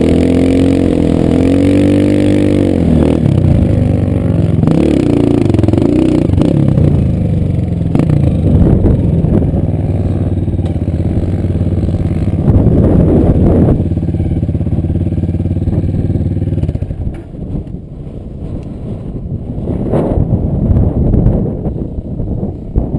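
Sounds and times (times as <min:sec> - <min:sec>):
motorcycle engine revving: 0:00.0 - 0:17.7.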